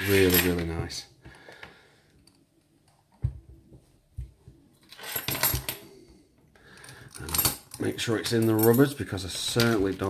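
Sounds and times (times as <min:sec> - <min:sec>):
metallic clinking and rattling: 0:04.8 - 0:05.9.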